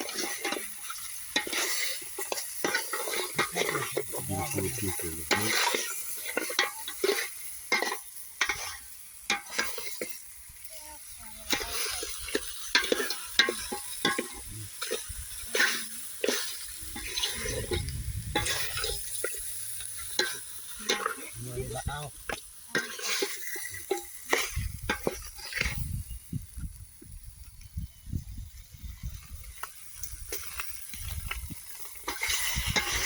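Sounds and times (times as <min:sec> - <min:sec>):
utensil scraping and knocking pan: 0:00.0 - 0:10.2, 0:11.4 - 0:21.3, 0:22.2 - 0:25.9, 0:32.0 - 0:33.0
meat sizzling in a pan: 0:00.0 - 0:33.0.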